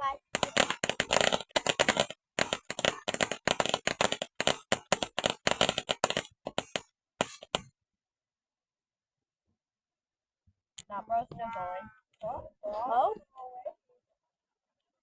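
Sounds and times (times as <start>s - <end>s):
firework crackling: 0.0s - 7.7s.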